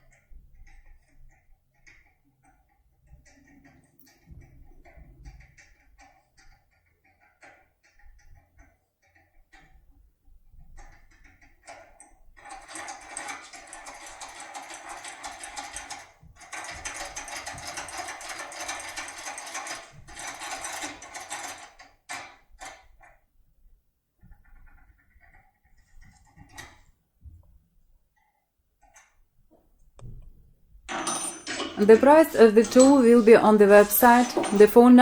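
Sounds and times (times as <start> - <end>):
lockpick rattling in a lock: 10.8 - 23.2, 30.9 - 35.0.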